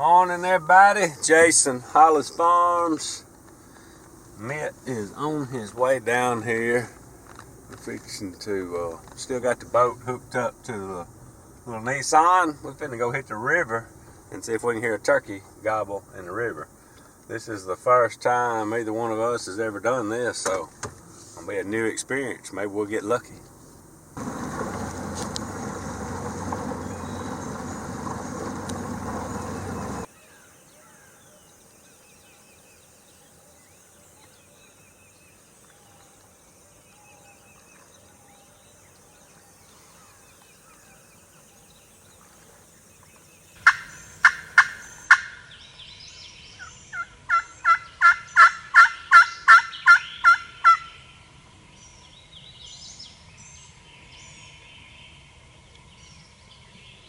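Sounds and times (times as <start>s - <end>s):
loud steady noise: 24.2s - 30.1s
turkey calls: 24.2s - 31.2s, 43.6s - 45.5s, 46.6s - 51.0s
faint bird chirps: 26.8s - 28.4s, 29.2s - 57.0s.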